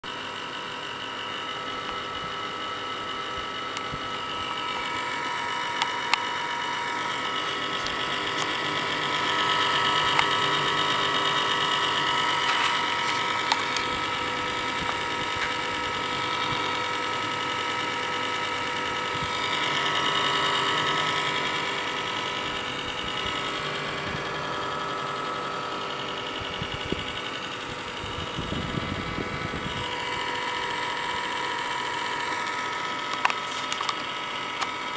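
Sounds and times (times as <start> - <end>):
computer whine over hiss: 1.4 - 34.9
clicks: 5.7 - 6.4, 33.0 - 34.8.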